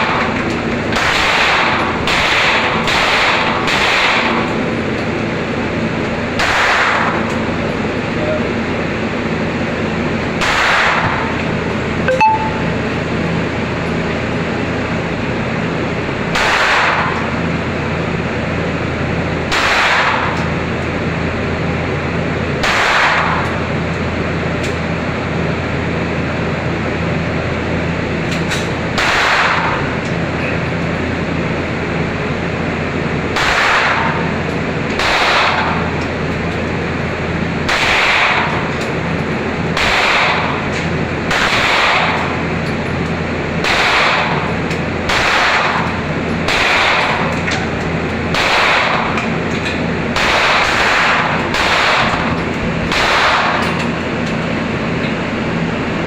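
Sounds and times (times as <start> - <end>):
steady low hum: 0.0 - 56.0
gunshots with echo: 1.0 - 4.4, 6.4 - 7.2, 10.4 - 11.3, 16.3 - 17.2, 19.5 - 20.3, 22.6 - 23.4, 29.0 - 29.8, 33.4 - 34.2, 35.0 - 35.8, 37.7 - 38.5, 39.8 - 40.5, 41.3 - 42.2, 43.6 - 44.4, 45.1 - 45.9, 46.5 - 47.3, 48.3 - 49.1, 50.2 - 53.6.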